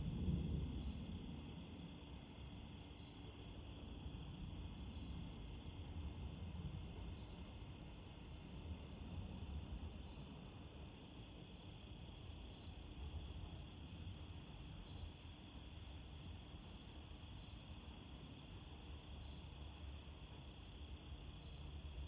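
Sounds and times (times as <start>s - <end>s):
wind rumble on microphone: 0.0s - 7.6s
crickets trilling: 0.0s - 22.0s.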